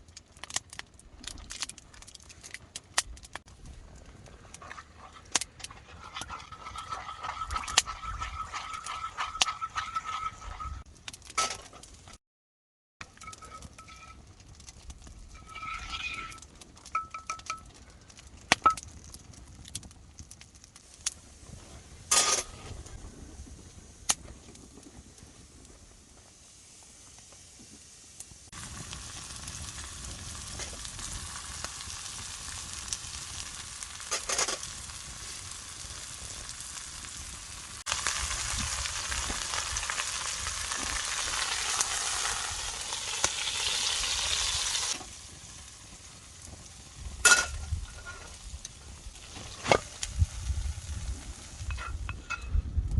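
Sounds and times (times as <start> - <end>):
food sizzling in a frying pan: 26.2 - 52.1.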